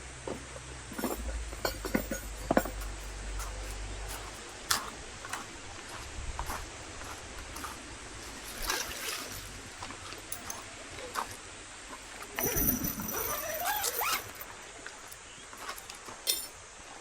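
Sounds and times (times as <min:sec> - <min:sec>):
drips and splashes: 0:08.2 - 0:11.2.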